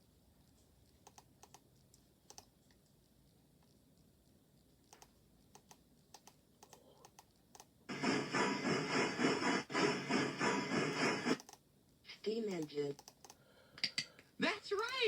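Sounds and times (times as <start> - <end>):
faint clicks: 0.4 - 7.8, 11.4 - 14.2
steam locomotive rush of steam: 7.9 - 11.4.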